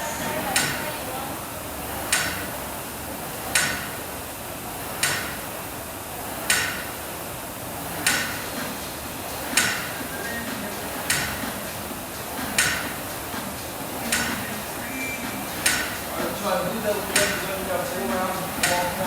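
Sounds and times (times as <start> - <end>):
gym equipment knocking: 15.6 - 19.0.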